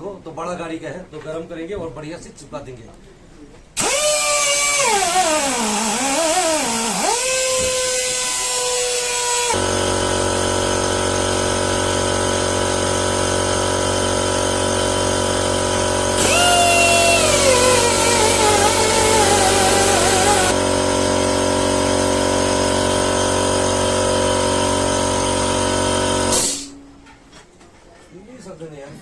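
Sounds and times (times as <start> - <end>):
power tool motor whine: 3.8 - 26.7
steady machine hum: 9.5 - 27.2.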